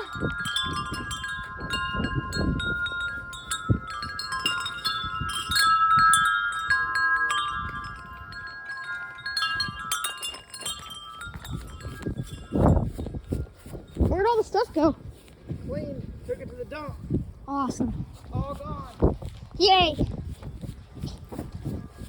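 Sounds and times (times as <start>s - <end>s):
wind chimes ringing: 0.0s - 15.0s
wind buffeting microphone: 0.0s - 22.0s.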